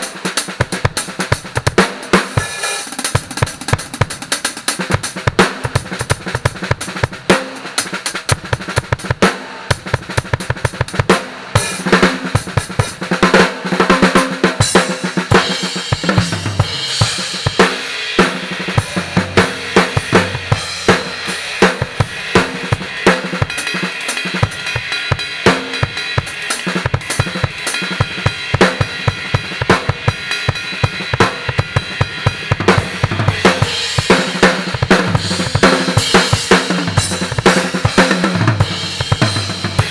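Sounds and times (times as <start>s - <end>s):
drum kit played fast: 0.0s - 39.9s
cymbals crashing: 15.2s - 32.5s.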